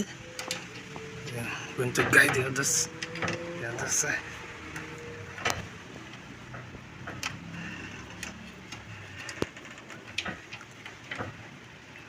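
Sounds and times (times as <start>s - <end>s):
metal parts clicking and knocking: 6.5s - 11.6s.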